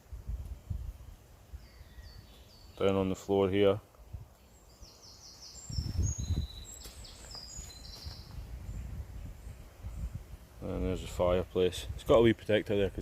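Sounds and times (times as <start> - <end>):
wind buffeting microphone: 0.0 - 2.3, 5.5 - 13.0
songbird singing: 0.0 - 13.0.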